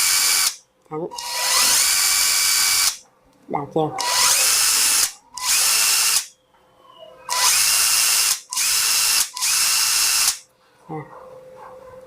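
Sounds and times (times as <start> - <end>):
cordless drill motor whirring: 0.0 - 0.6, 1.2 - 3.0, 4.0 - 6.3, 7.3 - 10.4.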